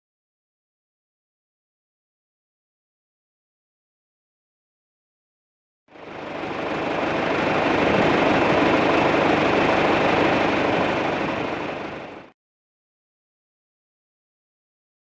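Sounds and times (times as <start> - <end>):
tractor diesel engine idling: 5.9 - 12.3.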